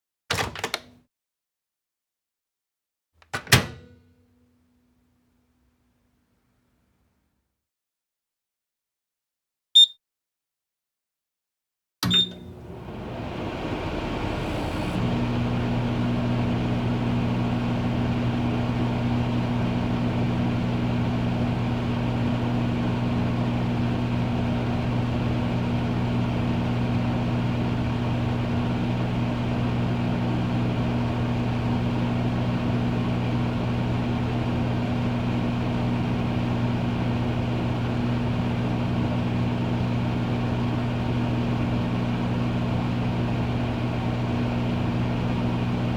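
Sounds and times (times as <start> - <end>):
microwave oven humming: 12.0 - 45.9.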